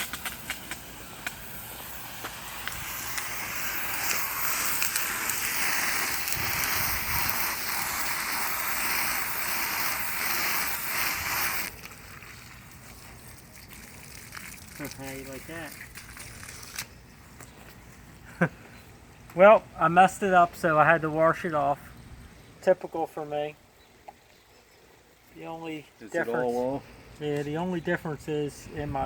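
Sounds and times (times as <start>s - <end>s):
garden hose spraying water: 0.0s - 18.5s.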